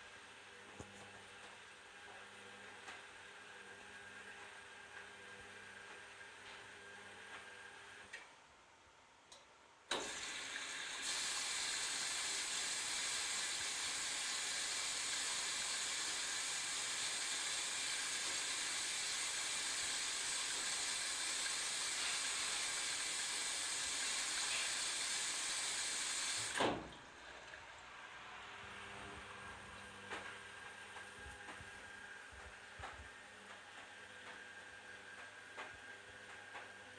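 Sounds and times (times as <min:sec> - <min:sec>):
water hissing into machine: 0:09.9 - 0:26.8.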